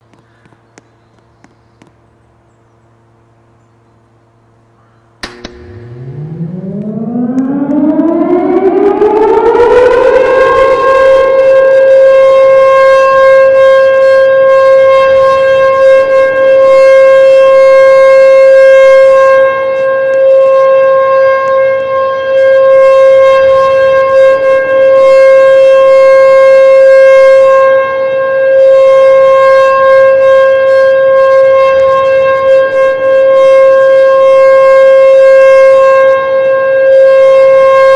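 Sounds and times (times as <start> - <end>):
siren click: 5.2 - 13.6, 17.6 - 22.0
warning siren winding up: 5.2 - 37.9.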